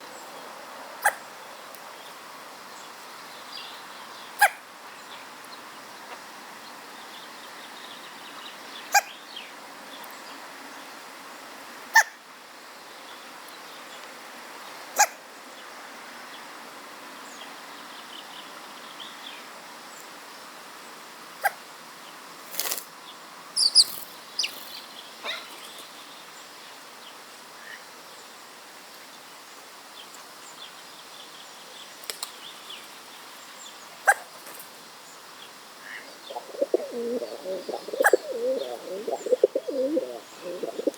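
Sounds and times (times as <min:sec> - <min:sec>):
crow fledgling hiccuping: 0:01.0 - 0:01.2, 0:36.3 - 0:40.9.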